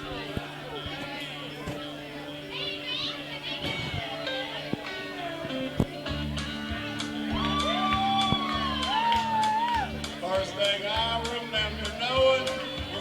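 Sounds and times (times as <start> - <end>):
band music with bass and drums: 4.7 - 13.0.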